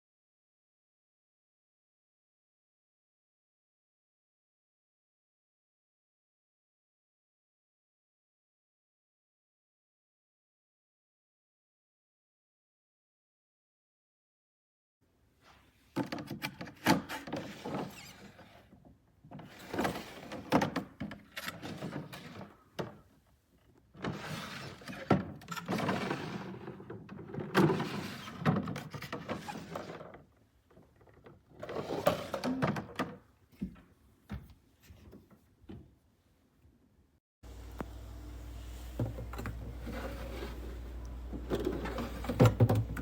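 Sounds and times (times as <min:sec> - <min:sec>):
plastic drawers scraping and knocking: 0:16.0 - 0:18.6, 0:19.4 - 0:23.0, 0:24.0 - 0:30.3, 0:31.2 - 0:33.7, 0:39.0 - 0:43.0.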